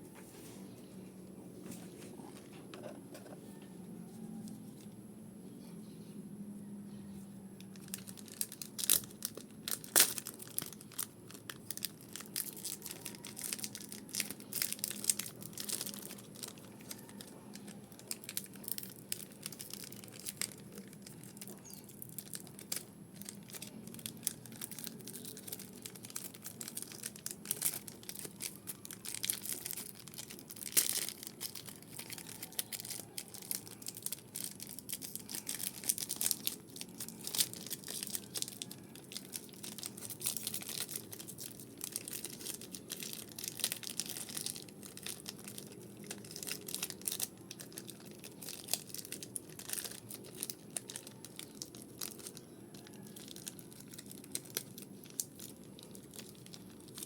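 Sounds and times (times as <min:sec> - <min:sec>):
plastic wrappers crinkling and tearing: 0:07.6 - 0:57.0.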